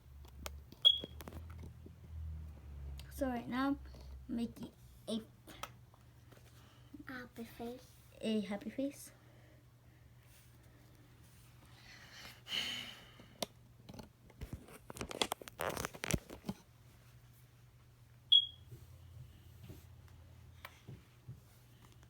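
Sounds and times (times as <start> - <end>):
short high beep: 0.8 - 1.1, 18.3 - 18.6.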